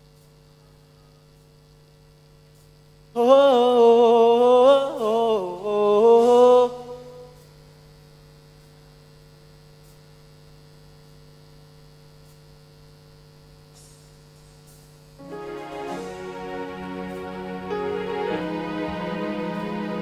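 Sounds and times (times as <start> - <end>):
electrical mains hum: 0.0 - 20.0
voices singing a sustained note: 3.2 - 7.3, 15.2 - 20.0.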